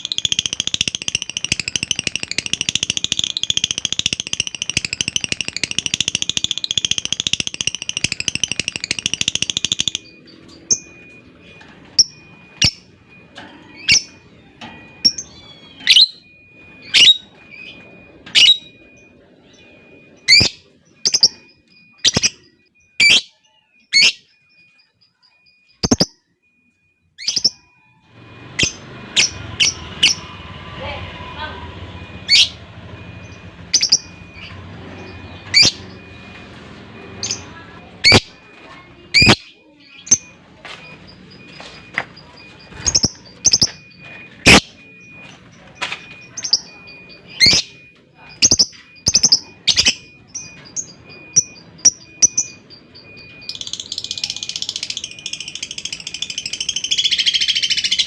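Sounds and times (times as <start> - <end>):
lovebird chattering trill: 0.0 - 10.1.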